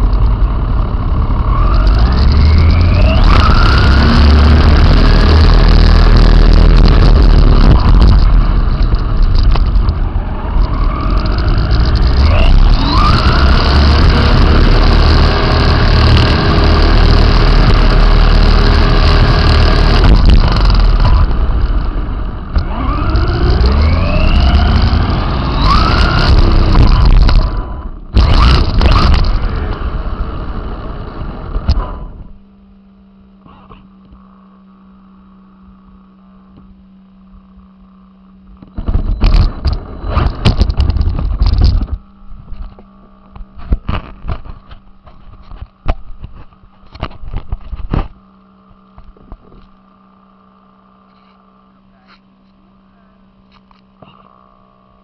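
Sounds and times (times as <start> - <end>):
toy car motor whining: 10.6 - 21.3, 22.6 - 29.4.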